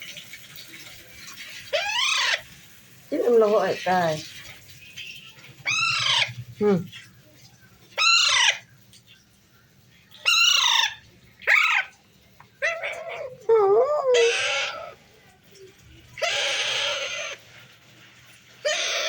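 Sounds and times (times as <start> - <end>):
parrot squawking: 1.6 - 2.5, 5.6 - 6.4, 7.9 - 8.7, 10.2 - 15.0, 16.2 - 17.5, 18.6 - 19.0.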